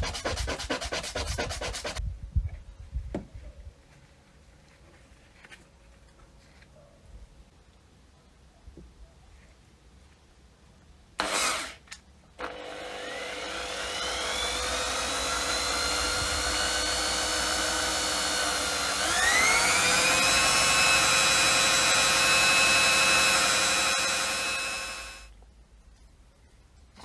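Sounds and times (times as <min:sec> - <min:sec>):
power tool motor whine: 0:12.4 - 0:25.3.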